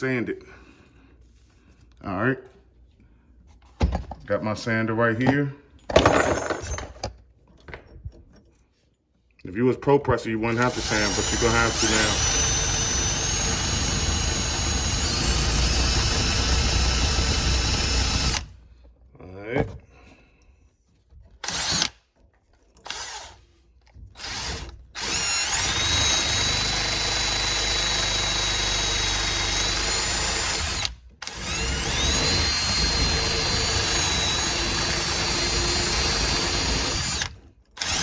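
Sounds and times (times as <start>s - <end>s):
power sander running: 10.5s - 18.4s, 24.2s - 38.0s.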